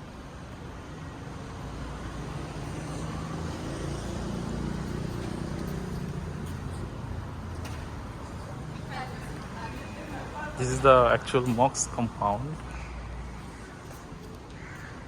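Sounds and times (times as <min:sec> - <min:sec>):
vehicle passing: 0:01.2 - 0:14.2.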